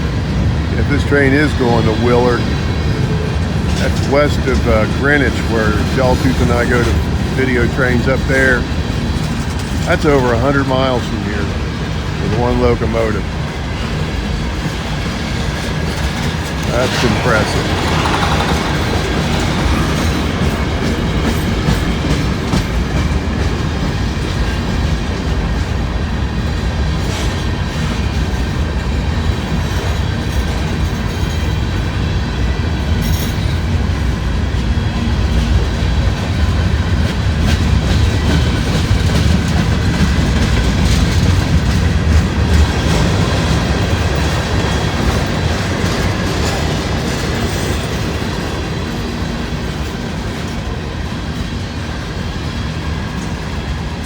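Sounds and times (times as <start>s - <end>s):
clickety-clack over rail joints: 0.0s - 54.0s
train wheels rumbling on rail: 0.0s - 54.0s
faint wheel squeal: 16.7s - 20.1s.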